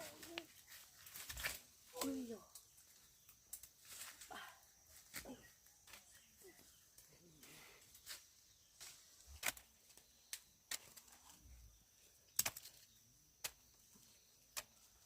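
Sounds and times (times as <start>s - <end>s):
sharp clicks and snaps: 12.3s - 12.8s.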